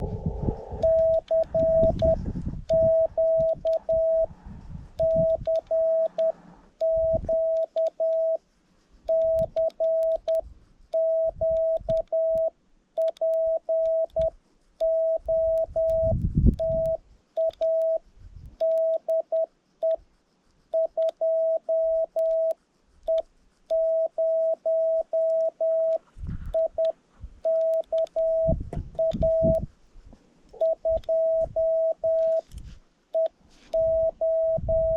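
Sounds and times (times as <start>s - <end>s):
low rumbles: 0.0s - 5.4s
morse code beeps: 0.7s - 4.3s, 4.9s - 8.4s, 9.1s - 18.0s, 18.6s - 20.0s, 20.7s - 29.7s, 30.6s - 32.5s, 33.1s - 34.9s.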